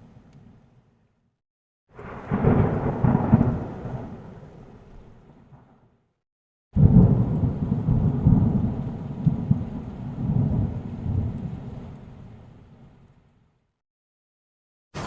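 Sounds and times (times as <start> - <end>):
thunder rumbling: 2.0 - 6.0, 6.8 - 12.9.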